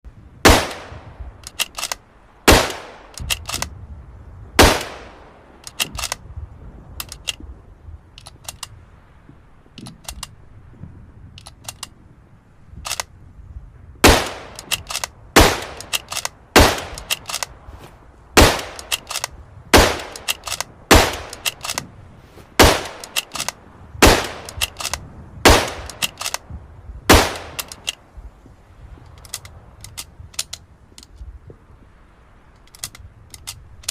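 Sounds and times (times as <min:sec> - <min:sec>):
rifle shots: 0:00.4 - 0:03.7, 0:04.6 - 0:06.2, 0:14.0 - 0:17.5, 0:18.4 - 0:21.9, 0:22.5 - 0:26.4, 0:27.1 - 0:28.0
rifle bolt clicking: 0:00.7 - 0:03.7, 0:04.6 - 0:06.2, 0:07.0 - 0:07.4, 0:08.2 - 0:08.7, 0:09.8 - 0:10.4, 0:11.4 - 0:11.9, 0:12.8 - 0:13.1, 0:14.1 - 0:17.6, 0:18.4 - 0:21.9, 0:22.6 - 0:26.5, 0:27.1 - 0:28.0, 0:29.1 - 0:31.2, 0:32.6 - 0:33.9.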